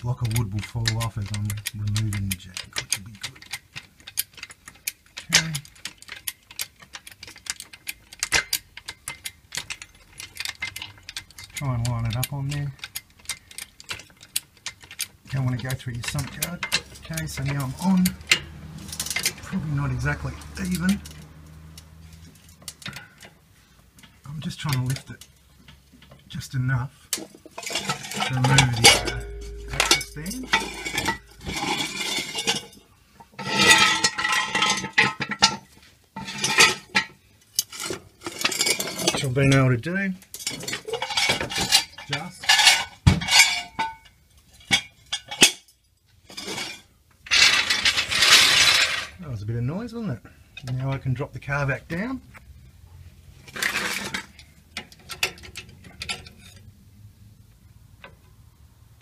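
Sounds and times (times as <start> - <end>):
jack clicking and knocking: 0.0 - 26.5, 27.1 - 39.7
metal scraping and clanking: 0.0 - 50.0, 50.6 - 56.8
ringing metallic tone: 28.0 - 32.1
sharp metal clinks: 28.1 - 31.8.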